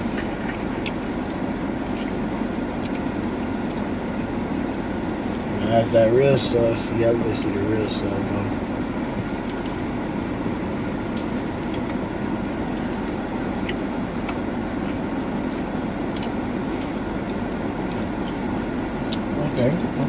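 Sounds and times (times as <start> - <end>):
air conditioning fan: 0.0 - 20.0
car engine idling: 0.0 - 20.0.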